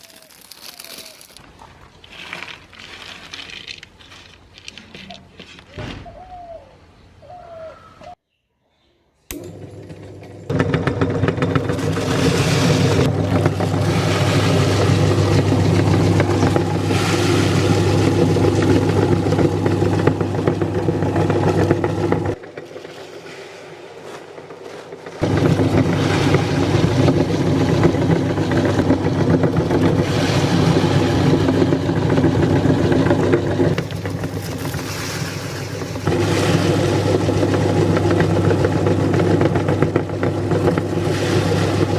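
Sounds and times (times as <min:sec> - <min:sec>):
chips crunching in grinder: 0:00.0 - 0:05.6, 0:11.0 - 0:21.6, 0:33.8 - 0:39.3
electric meat grinder motor hum: 0:09.3 - 0:22.4, 0:25.2 - 0:41.9.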